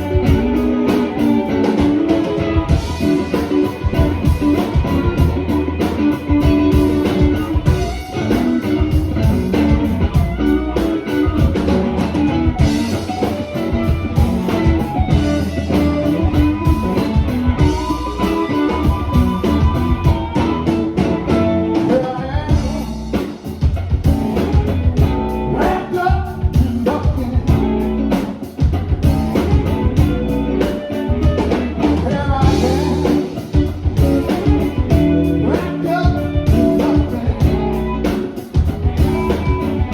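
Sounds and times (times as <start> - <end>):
blues band playing live: 0.0 - 39.9
electric guitar: 0.0 - 39.9
person singing: 14.0 - 23.4, 25.4 - 28.1, 31.7 - 38.4.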